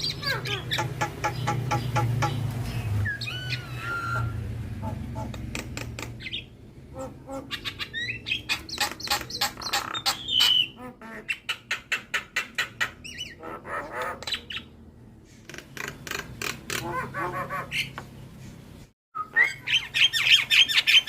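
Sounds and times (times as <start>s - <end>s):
bird clicks and chattering: 5.3s - 6.4s, 8.4s - 10.2s, 15.4s - 16.8s.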